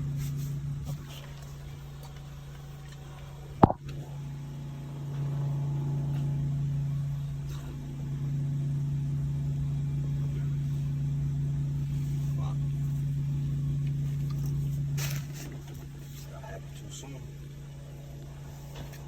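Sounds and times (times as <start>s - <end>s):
engine humming: 0.0s - 19.0s.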